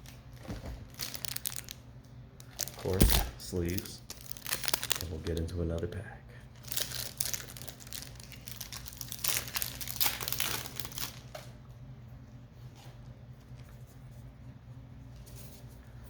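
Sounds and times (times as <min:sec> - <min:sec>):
foil wrapper crinkling: 0:00.0 - 0:01.8, 0:02.4 - 0:05.8, 0:06.6 - 0:11.5.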